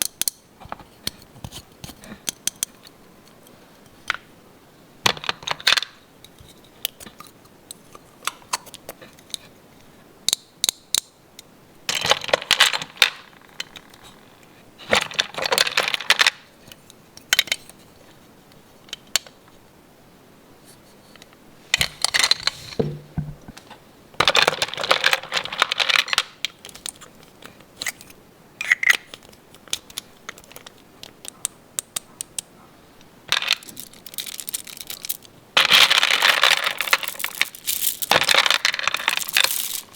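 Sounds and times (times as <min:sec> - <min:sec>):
plastic toy pieces clicking: 0:28.6 - 0:32.5, 0:33.3 - 0:39.9
packaging rustling: 0:33.4 - 0:39.9.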